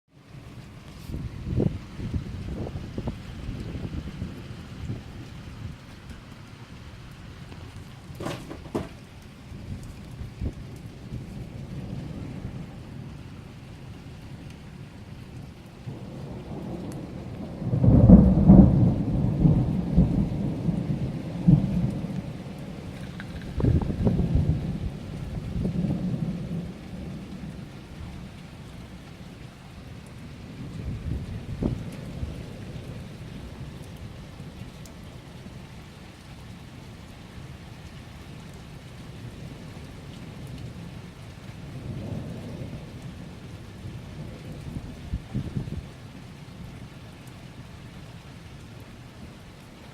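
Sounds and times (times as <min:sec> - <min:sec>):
steady rain: 0:00.1 - 0:49.9
thunder rumbling: 0:00.6 - 0:06.0, 0:07.3 - 0:29.3, 0:30.0 - 0:34.7, 0:39.2 - 0:46.1.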